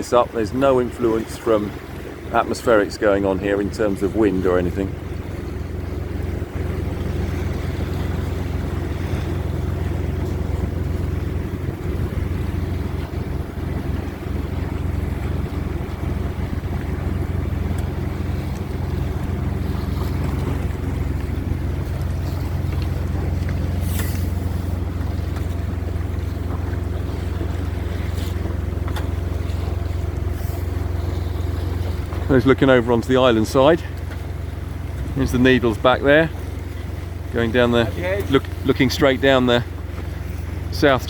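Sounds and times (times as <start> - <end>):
boat engine drone: 0.0 - 41.0
water rushing along hull: 0.0 - 41.0
wind on microphone: 4.7 - 28.4.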